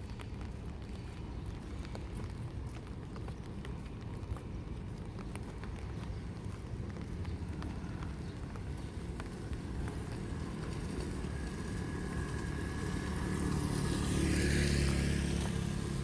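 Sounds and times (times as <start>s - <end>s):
vehicle engine rumble: 0.0s - 16.0s
tyres hissing on wet road: 7.5s - 16.0s.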